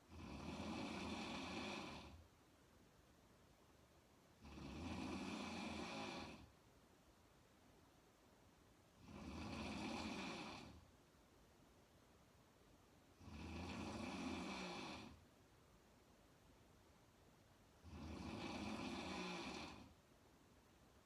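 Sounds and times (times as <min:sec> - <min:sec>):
woman snoring: 0:00.1 - 0:02.2, 0:04.4 - 0:06.5, 0:09.0 - 0:10.8, 0:13.2 - 0:15.2, 0:17.8 - 0:19.9.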